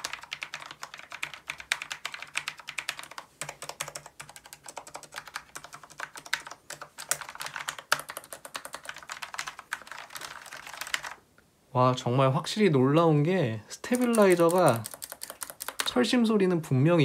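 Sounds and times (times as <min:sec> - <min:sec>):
keyboard keystroke clicks: 0:14.0 - 0:15.9.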